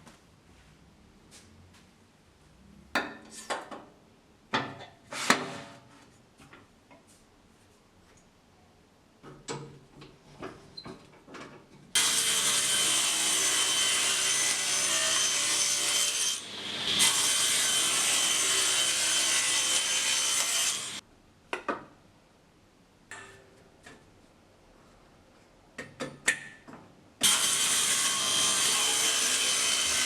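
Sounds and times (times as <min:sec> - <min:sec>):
table saw cutting wood: 0:12.0 - 0:21.0, 0:27.2 - 0:30.0.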